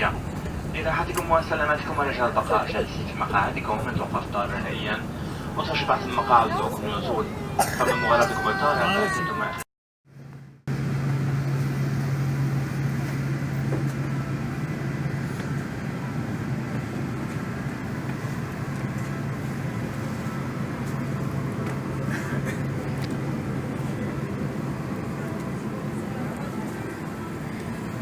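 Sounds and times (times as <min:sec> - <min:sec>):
low cabin hum: 0:00.0 - 0:09.6.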